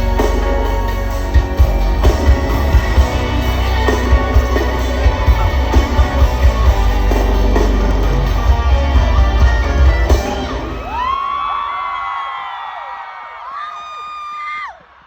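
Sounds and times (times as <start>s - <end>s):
loud amplified music with heavy bass: 0.0s - 11.2s.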